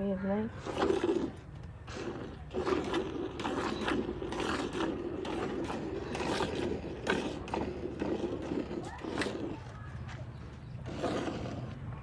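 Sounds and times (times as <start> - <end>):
milk squirting into a pail: 0.5 - 9.8.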